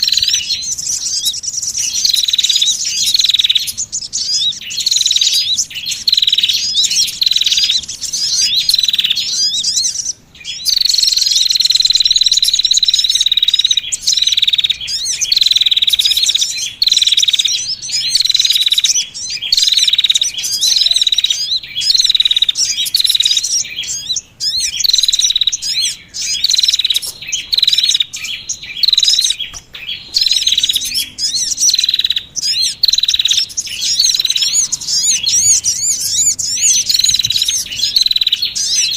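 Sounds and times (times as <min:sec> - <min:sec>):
small songbirds chirping and trilling: 0:00.0 - 0:38.9.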